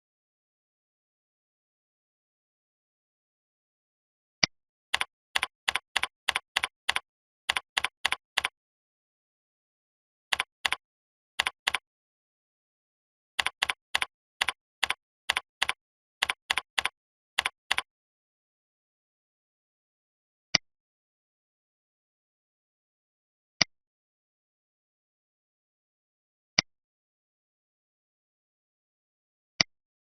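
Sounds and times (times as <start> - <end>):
sharp click: 4.9 - 8.5, 13.4 - 17.9
typing on computer keyboard: 4.9 - 8.6, 10.3 - 10.8, 11.4 - 11.8, 13.4 - 17.9.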